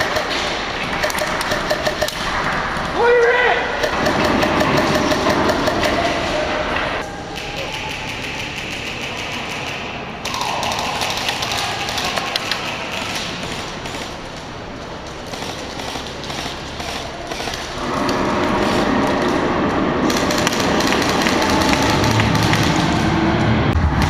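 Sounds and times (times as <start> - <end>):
airsoft guns firing: 0.0 - 2.4, 3.8 - 6.4, 20.0 - 23.1.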